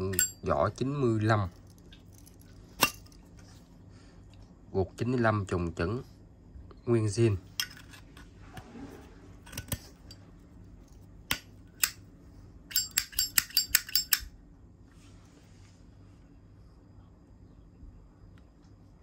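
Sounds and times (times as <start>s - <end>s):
metal lighter clicking: 12.7s - 14.3s.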